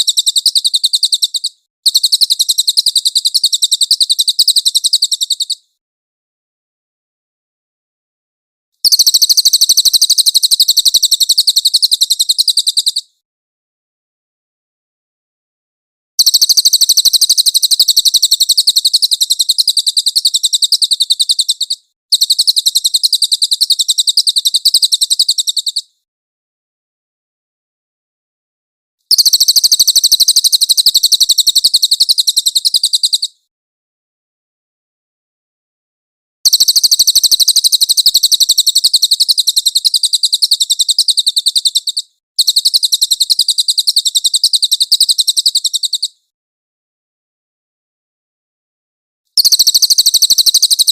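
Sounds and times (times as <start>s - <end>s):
songbird trilling: 0.0s - 5.6s, 8.8s - 13.1s, 16.2s - 25.9s, 29.1s - 33.3s, 36.5s - 46.2s, 49.4s - 50.9s
bird high thin chirps: 0.0s - 5.8s, 8.8s - 13.2s, 16.2s - 26.0s, 29.1s - 33.4s, 36.5s - 46.3s, 49.4s - 50.9s.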